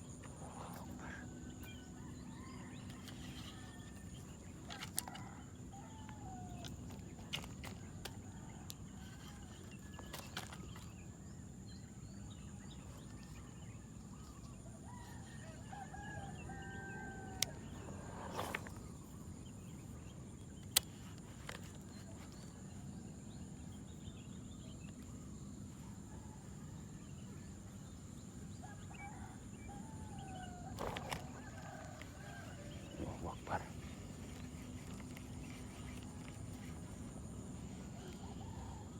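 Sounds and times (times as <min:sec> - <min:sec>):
outdoor background noise: 0:00.0 - 0:38.9
bird calls: 0:30.3 - 0:37.1.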